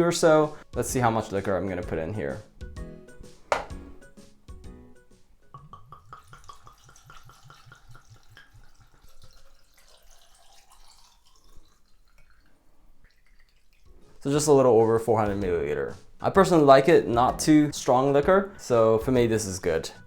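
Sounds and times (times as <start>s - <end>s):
liquor glugging from bottle: 5.6s - 14.2s.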